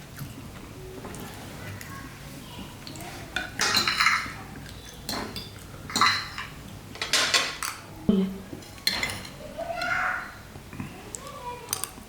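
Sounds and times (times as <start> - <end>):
cutlery clinking and scraping dishes: 2.9 - 7.9, 8.5 - 9.4.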